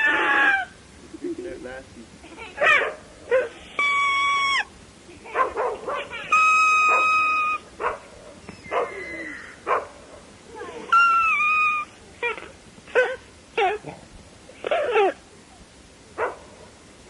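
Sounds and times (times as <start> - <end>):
dog barking and yipping: 2.6 - 3.6, 5.3 - 10.0, 12.9 - 13.8, 16.2 - 16.5
grass whistle blowing: 3.7 - 4.7, 6.3 - 7.7, 10.9 - 11.9.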